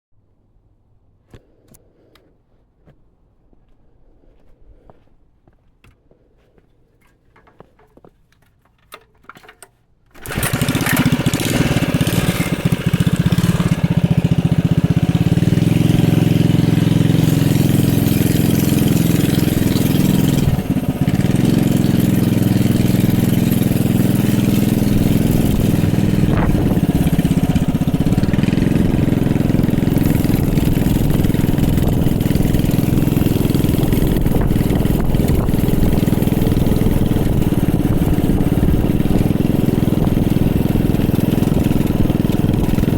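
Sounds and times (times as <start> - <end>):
small engine starting and running: 8.9 - 42.9.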